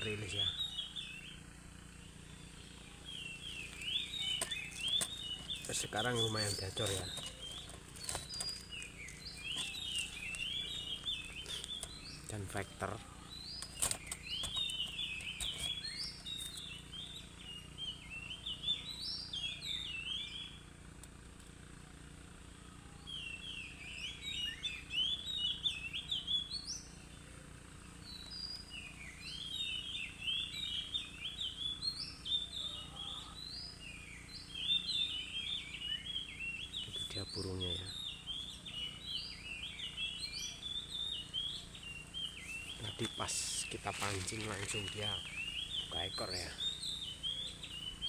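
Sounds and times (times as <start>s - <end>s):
magpie-robin singing: 0.0s - 20.8s, 23.0s - 48.0s.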